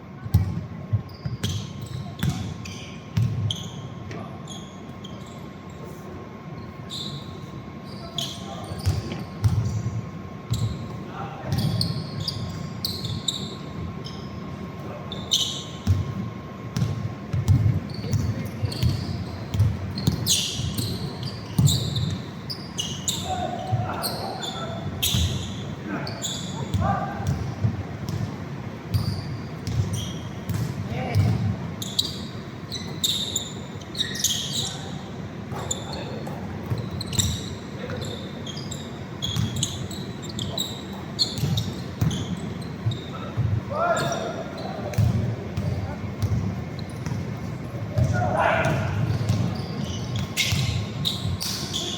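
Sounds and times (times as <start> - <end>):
basketball bouncing on court: 0.3 - 3.6, 8.8 - 9.9, 15.8 - 22.3, 26.6 - 33.1, 35.5 - 38.1, 39.2 - 44.2, 44.8 - 51.6
sneakers squeaking on floor: 0.3 - 5.9, 6.5 - 51.9.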